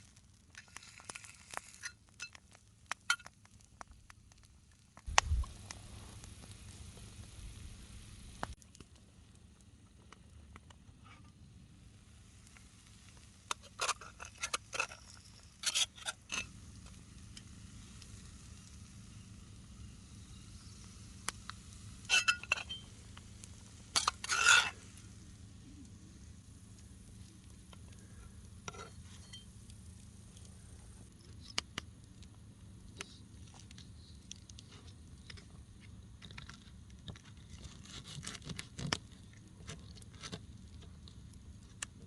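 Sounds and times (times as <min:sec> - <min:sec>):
faint steady hiss: 0:00.0 - 0:37.2
metal utensil scraping a pan: 0:13.5 - 0:16.5, 0:22.1 - 0:22.8, 0:23.9 - 0:24.8.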